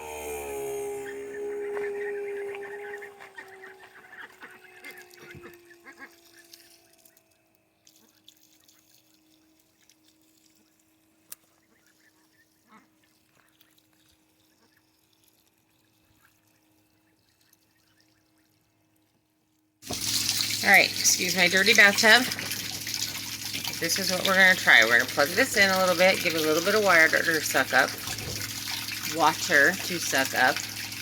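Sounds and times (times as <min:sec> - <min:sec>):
slowly falling tone: 0:00.0 - 0:07.6
ducks calling: 0:00.9 - 0:07.2.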